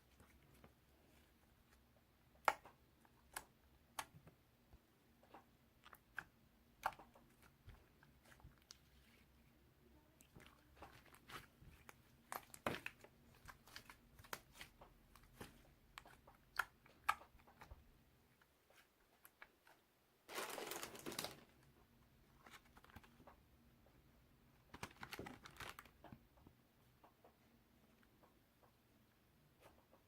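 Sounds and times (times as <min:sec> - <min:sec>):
crinkling rustle: 0:20.3 - 0:21.6, 0:24.7 - 0:26.2.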